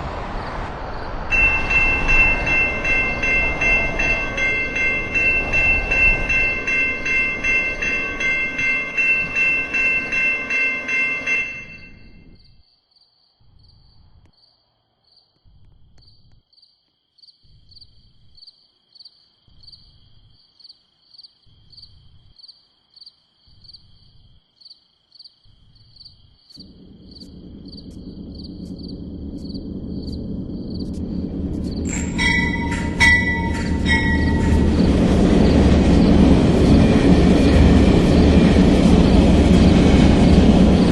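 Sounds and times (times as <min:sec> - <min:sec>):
low rumble: 0:00.0 - 0:09.8, 0:26.6 - 0:40.9
crickets chirping: 0:00.0 - 0:40.9.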